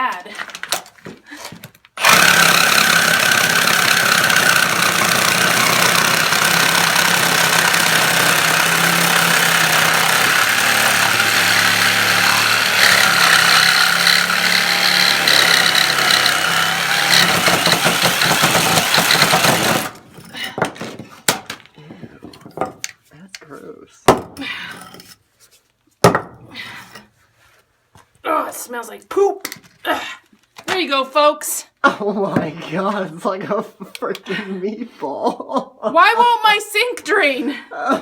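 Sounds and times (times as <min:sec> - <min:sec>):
power tool cutting metal pipe: 0:02.0 - 0:20.1.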